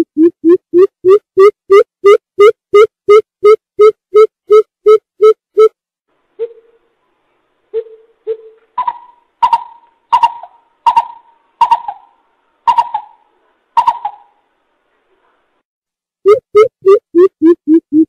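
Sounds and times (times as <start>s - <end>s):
coucal deep hooting calls: 7.8s - 14.4s.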